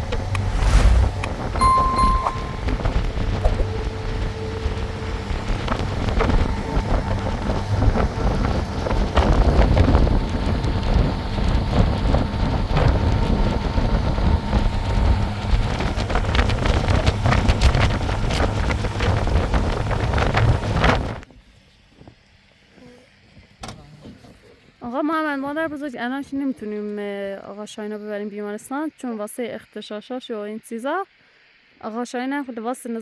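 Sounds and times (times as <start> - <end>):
strong wind buffeting microphone: 0.0 - 21.2.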